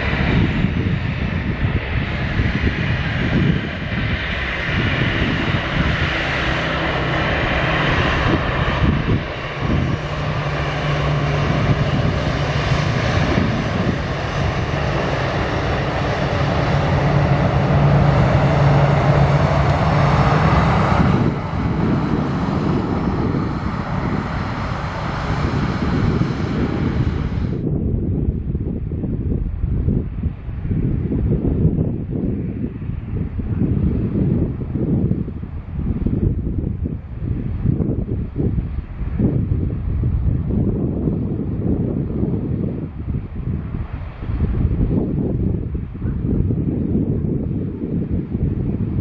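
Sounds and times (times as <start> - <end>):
jet engines roaring: 0.0 - 49.0.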